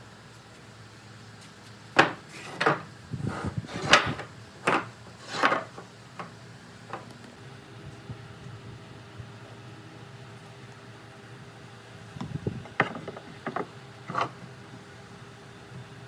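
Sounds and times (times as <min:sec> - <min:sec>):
wooden pieces knocking: 0:02.0 - 0:02.8, 0:03.7 - 0:06.3, 0:12.6 - 0:14.4.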